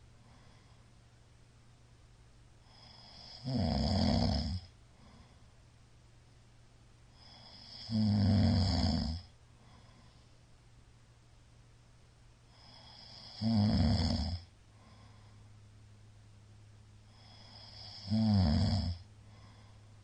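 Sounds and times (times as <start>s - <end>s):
quiet breathing: 0.0s - 20.0s
man snoring heavily: 2.7s - 4.7s, 7.2s - 9.3s, 12.5s - 15.1s, 17.1s - 19.6s.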